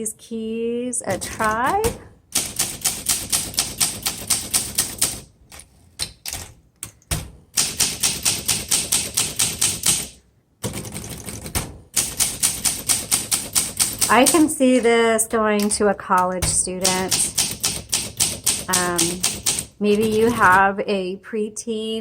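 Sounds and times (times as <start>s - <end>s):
typewriter key strikes: 6.0s - 14.5s, 15.6s - 20.6s.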